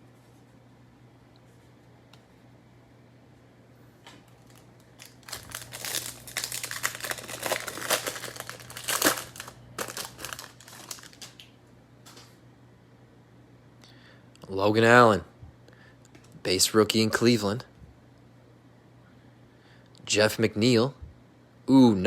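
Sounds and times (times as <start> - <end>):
foil wrapper crinkling and tearing: 4.3 - 11.5.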